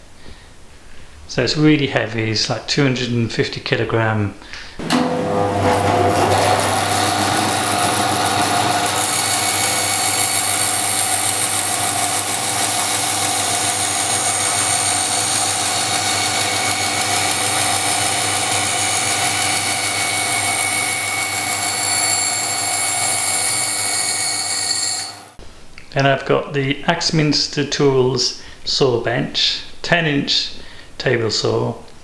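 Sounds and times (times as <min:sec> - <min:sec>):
bandsaw motor hum: 0:04.8 - 0:25.4.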